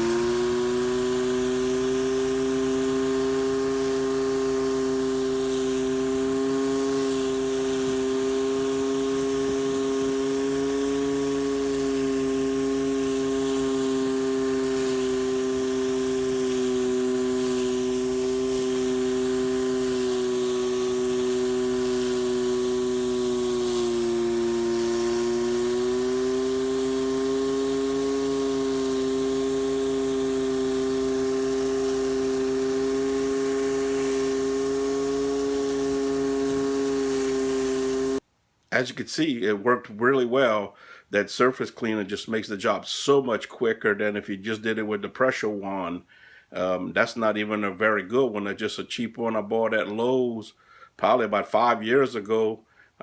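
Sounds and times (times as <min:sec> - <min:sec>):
water spraying onto concrete: 0:00.0 - 0:38.2
pressure washer whine: 0:00.0 - 0:38.3.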